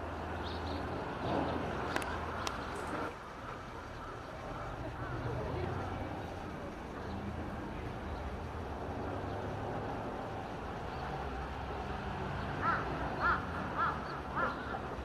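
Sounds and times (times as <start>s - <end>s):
low background noise: 0.0s - 15.0s
crow cawing: 12.6s - 14.8s.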